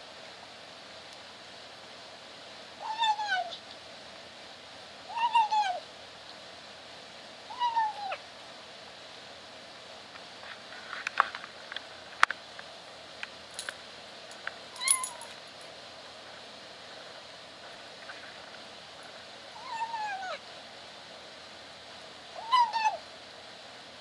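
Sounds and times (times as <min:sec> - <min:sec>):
kitten meowing: 0:14.8 - 0:15.2, 0:19.6 - 0:20.4, 0:22.4 - 0:23.0.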